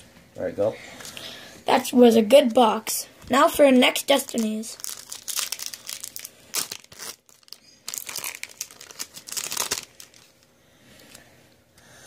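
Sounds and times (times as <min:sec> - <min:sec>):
foil wrapper crinkling: 0:04.0 - 0:11.2.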